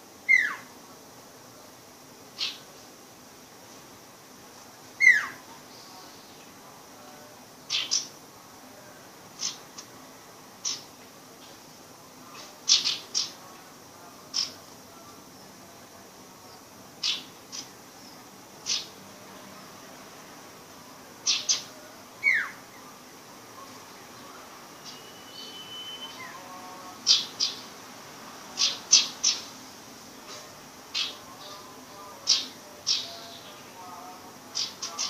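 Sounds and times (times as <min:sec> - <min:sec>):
bird whistle: 0:00.3 - 0:00.6, 0:24.8 - 0:26.4.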